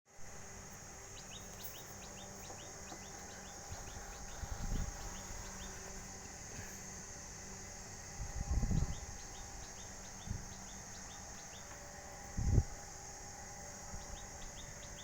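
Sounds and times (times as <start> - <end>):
bird chirping: 1.1 - 5.9, 8.8 - 11.8.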